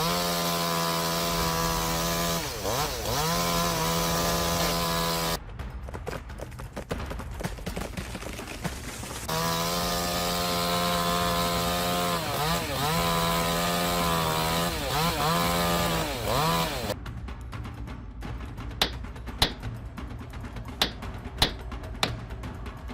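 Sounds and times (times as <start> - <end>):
chainsaw at full throttle: 0.0 - 5.4, 9.3 - 17.0
irregular crackling and knocking: 18.8 - 19.7, 20.8 - 22.2.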